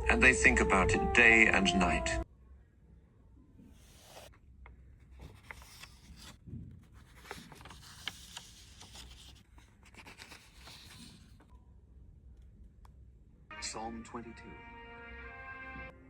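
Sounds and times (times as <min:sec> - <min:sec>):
paper rustling and scratching: 0:03.7 - 0:04.4, 0:05.0 - 0:11.5.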